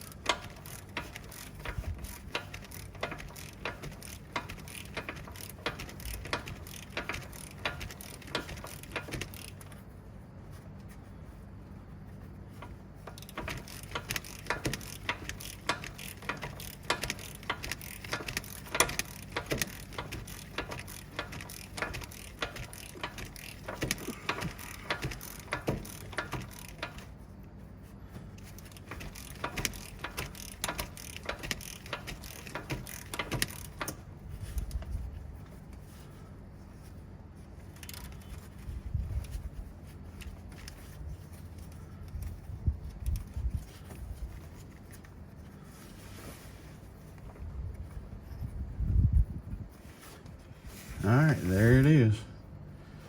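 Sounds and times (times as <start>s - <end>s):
ratchet wrench clicking: 0.0s - 9.8s, 12.6s - 27.2s, 28.4s - 35.0s.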